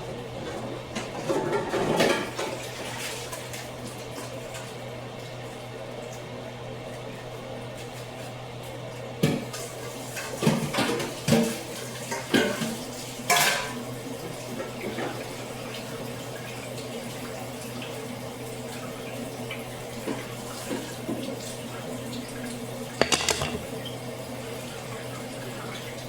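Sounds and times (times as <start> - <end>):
tap running into sink: 23.0 - 23.7
dishes and cutlery clattering: 23.0 - 23.9.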